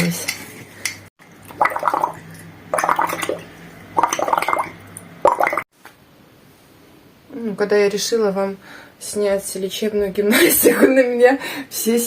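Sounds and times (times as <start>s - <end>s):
child blowing bubbles into water: 1.5s - 5.7s.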